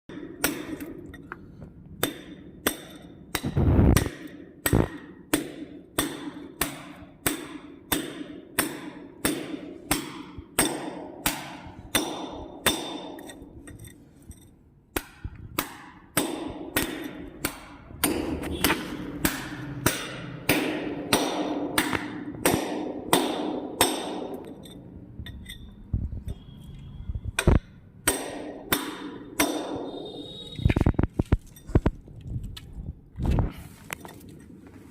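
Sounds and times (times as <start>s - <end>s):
hammer blows with metallic ring: 15.0s - 30.7s.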